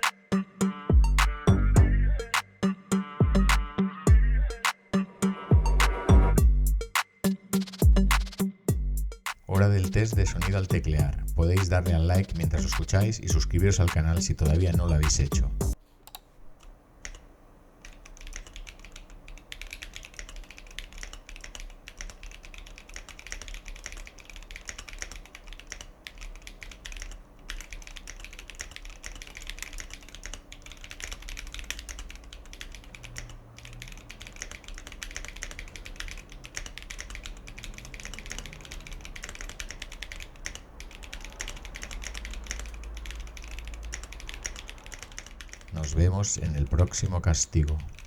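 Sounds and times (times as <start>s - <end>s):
mechanical keyboard typing: 9.6s - 15.4s, 16.0s - 48.0s.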